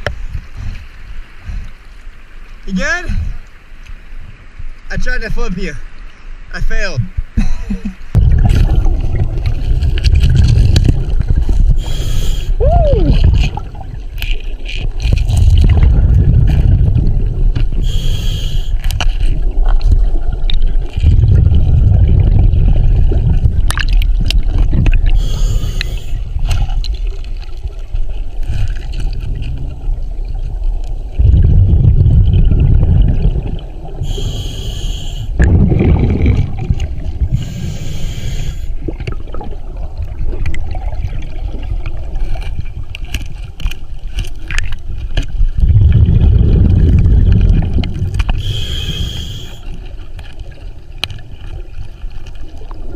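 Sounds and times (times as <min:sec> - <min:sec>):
exhaled bubbles rumbling: 0:07.0 - 0:52.9
regulator inhalation hiss: 0:11.8 - 0:12.6, 0:17.8 - 0:18.8, 0:25.2 - 0:26.2, 0:34.0 - 0:35.4, 0:37.4 - 0:38.7, 0:48.4 - 0:49.7.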